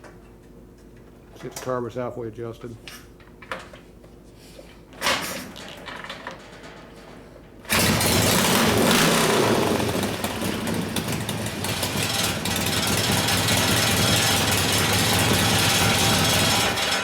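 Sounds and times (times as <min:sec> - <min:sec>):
motorcycle engine running loud: 0:07.7 - 0:17.0.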